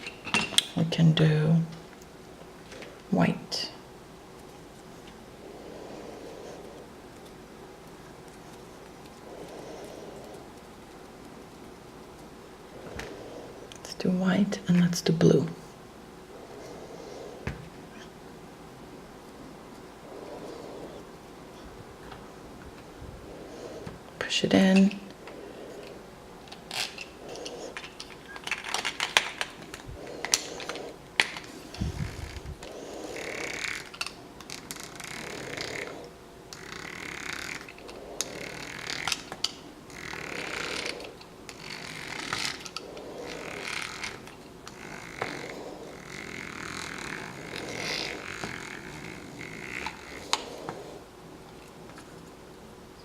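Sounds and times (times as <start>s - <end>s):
plastic toy grinder cranking: 26.5s - 32.4s, 33.0s - 50.6s.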